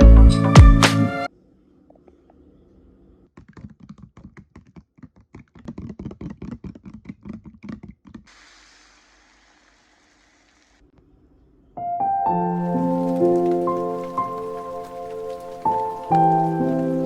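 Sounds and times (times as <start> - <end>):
faint steady hiss: 12.4 - 17.0.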